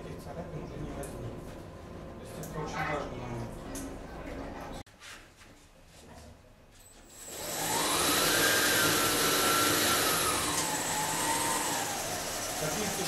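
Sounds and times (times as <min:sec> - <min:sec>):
belt grinder motor whine: 0:07.1 - 0:13.0.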